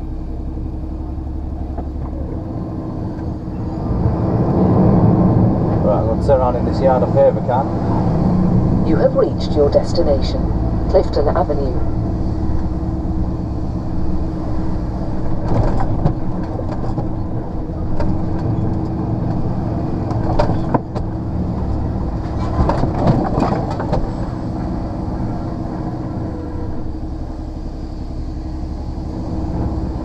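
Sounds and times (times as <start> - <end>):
diesel lorry engine running: 0.0 - 30.0
cab rattles and clunks: 15.2 - 19.4, 20.0 - 21.3, 22.1 - 24.4.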